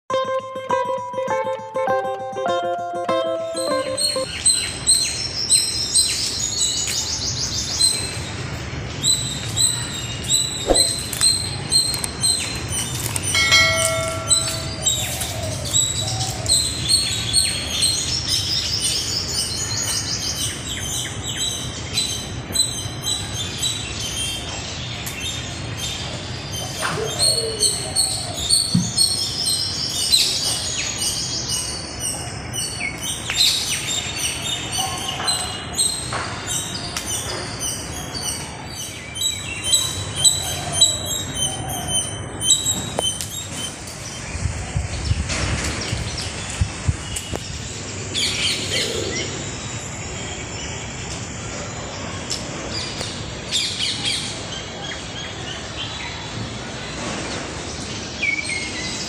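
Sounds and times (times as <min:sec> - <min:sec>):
bird trills: 0:03.4 - 0:06.6, 0:10.4 - 0:17.6
birds chirping and tweeting: 0:03.4 - 0:59.0
lower bird calls: 0:09.0 - 0:19.0.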